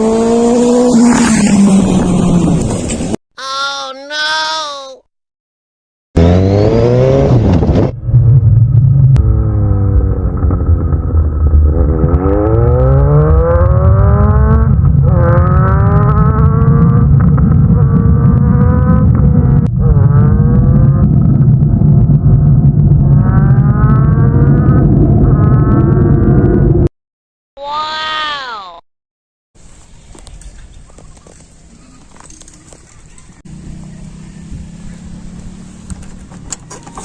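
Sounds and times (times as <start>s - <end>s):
motorcycle engine revving: 0.0s - 2.9s, 6.2s - 26.9s, 33.4s - 36.8s.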